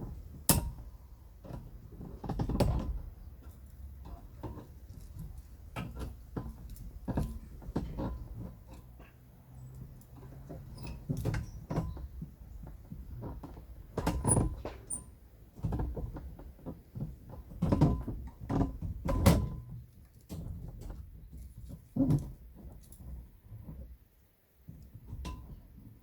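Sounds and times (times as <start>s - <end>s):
knocks and clatter of materials: 1.4s - 8.9s, 15.6s - 23.1s.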